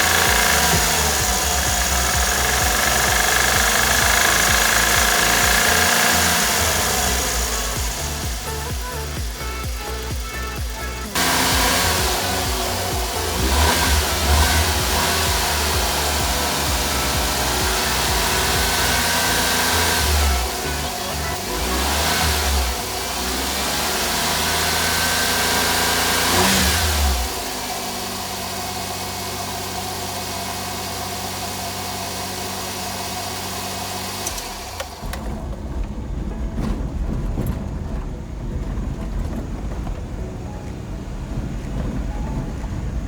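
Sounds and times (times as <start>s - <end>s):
low uneven rumble: 0.0s - 19.4s, 34.6s - 43.0s
car engine revving: 0.0s - 43.0s.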